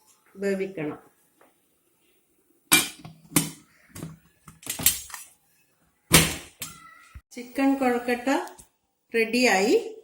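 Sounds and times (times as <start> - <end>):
metal pot lid clanking: 2.7 - 3.6.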